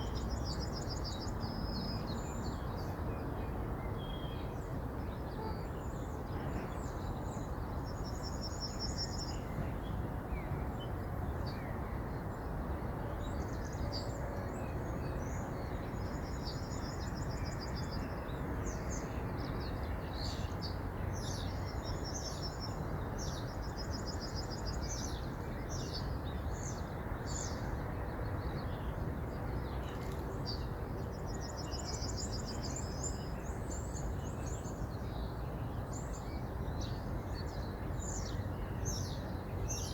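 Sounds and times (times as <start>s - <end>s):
small birds singing: 13.2s - 39.9s.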